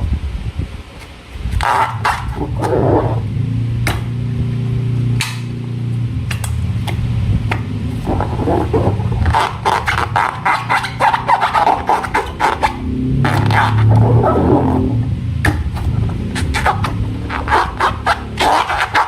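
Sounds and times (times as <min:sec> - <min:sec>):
low buzzing drone: 0:00.0 - 0:19.0
balloons clicking and crackling: 0:01.0 - 0:03.3, 0:06.2 - 0:19.0.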